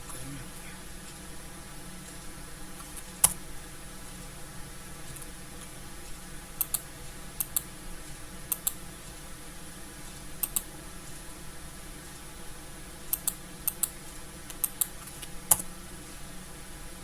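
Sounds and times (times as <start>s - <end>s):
faint background hum: 0.0s - 17.0s
computer input clicks: 2.8s - 3.4s, 6.6s - 7.7s, 8.5s - 8.8s, 10.4s - 10.7s, 13.1s - 15.7s.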